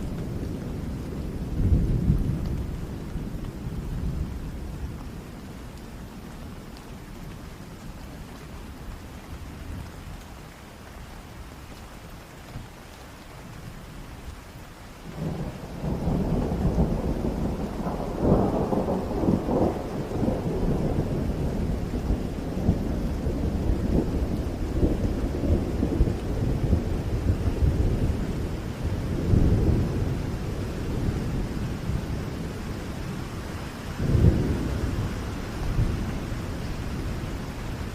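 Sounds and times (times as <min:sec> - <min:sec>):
heavy rain: 0:00.0 - 0:37.9
thunder rumbling: 0:15.1 - 0:37.9.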